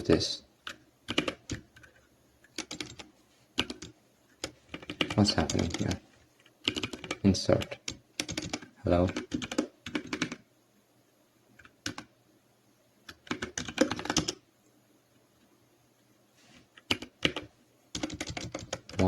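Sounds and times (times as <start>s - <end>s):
keyboard typing: 0.6s - 10.4s, 11.6s - 12.1s, 13.1s - 14.4s, 16.8s - 19.0s.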